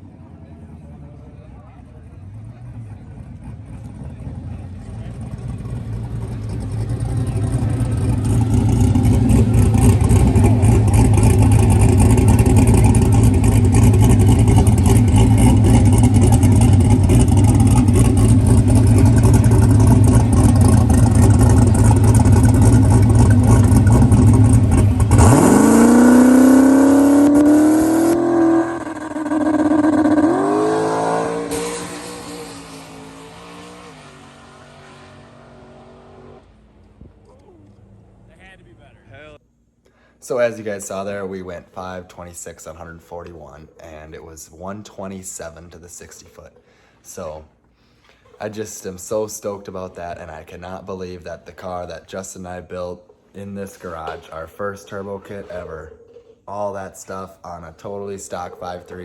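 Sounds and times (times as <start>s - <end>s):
drag car engine rumbling and revving: 0.0s - 39.7s, 48.2s - 59.0s.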